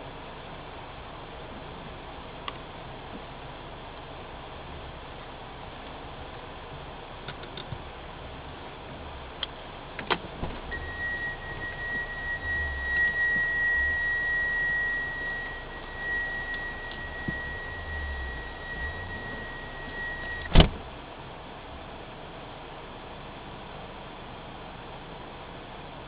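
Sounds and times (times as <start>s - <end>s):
low rumble: 10.3s - 20.9s
high-pitched electronic tone: 10.6s - 20.6s.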